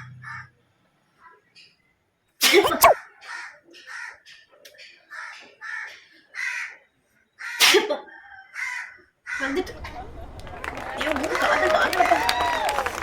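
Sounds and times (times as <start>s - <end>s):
crows cawing: 3.3s - 4.3s, 5.1s - 6.8s, 7.4s - 7.6s, 8.6s - 9.5s.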